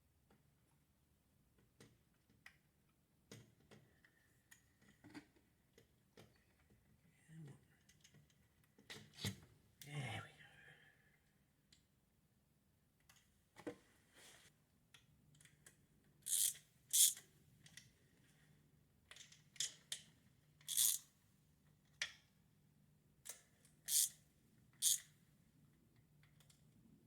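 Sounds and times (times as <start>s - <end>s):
hand tools scraping and clicking: 24.8s - 25.0s.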